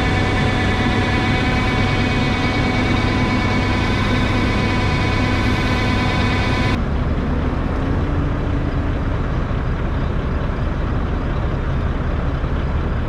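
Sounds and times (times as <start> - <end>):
broad rushing noise: 0.0 - 6.8
steady whine: 0.0 - 6.8
diesel engine hum: 0.0 - 13.0.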